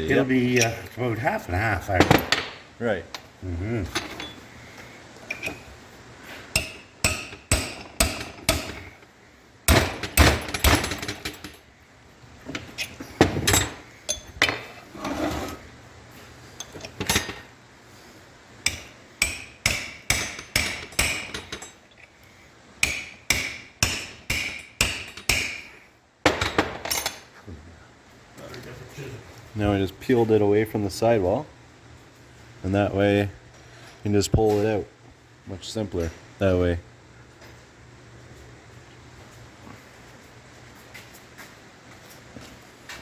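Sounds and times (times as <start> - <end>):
hammer striking metal: 6.6 - 8.8, 22.8 - 25.7.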